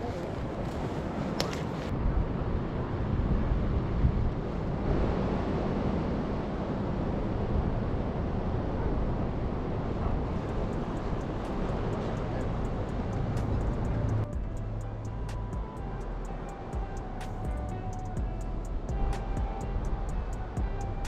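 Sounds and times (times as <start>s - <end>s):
ocean surf: 0.0s - 14.3s
wind buffeting microphone: 0.0s - 21.0s.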